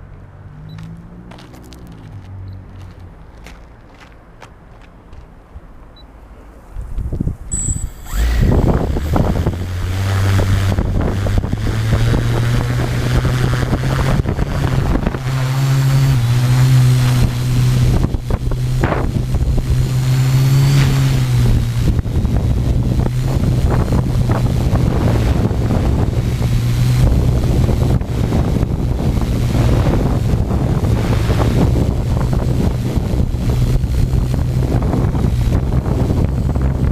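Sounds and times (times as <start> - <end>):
wind buffeting microphone: 6.6 - 36.9
drone motors humming: 7.5 - 36.9.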